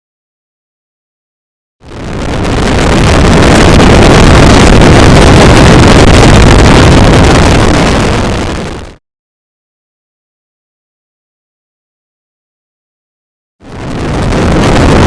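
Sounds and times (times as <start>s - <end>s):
wind buffeting microphone: 1.8s - 9.0s, 13.6s - 15.0s.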